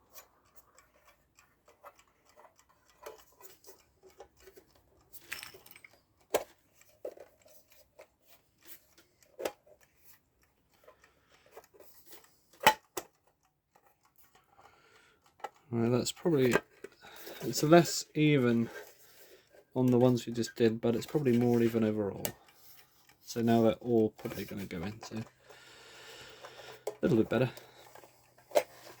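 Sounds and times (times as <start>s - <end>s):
small metal clicks and taps: 0.0s - 15.7s.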